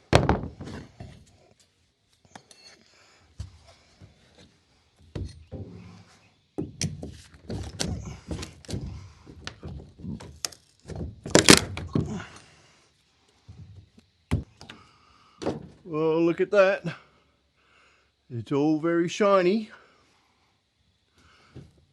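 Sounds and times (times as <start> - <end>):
wooden thunks and knocks: 0.1 - 1.2, 5.0 - 6.0, 6.6 - 12.3, 13.5 - 14.7, 15.4 - 15.8.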